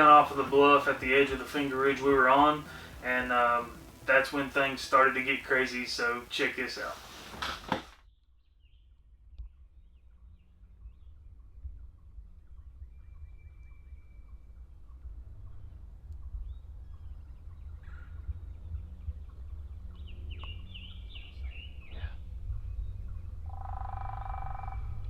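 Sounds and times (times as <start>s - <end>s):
songbird chirps: 0.0s - 7.7s, 10.3s - 25.0s
turkey gobbling: 0.2s - 4.7s, 23.5s - 24.9s
low wind rumble on microphone: 8.6s - 25.0s.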